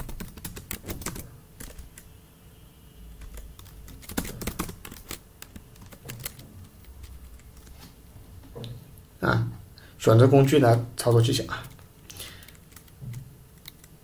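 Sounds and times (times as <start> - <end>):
keyboard typing: 0.0 - 2.1, 3.1 - 7.8, 10.4 - 14.0.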